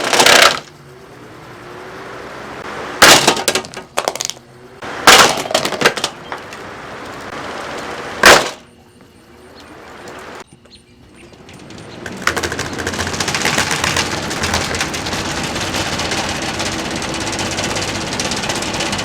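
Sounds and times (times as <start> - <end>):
breaking plastic clattering: 0.0 - 0.8, 3.0 - 4.4, 5.0 - 8.7, 11.4 - 19.0
steady noise: 0.0 - 10.5
loud blows on a fan: 11.0 - 19.0.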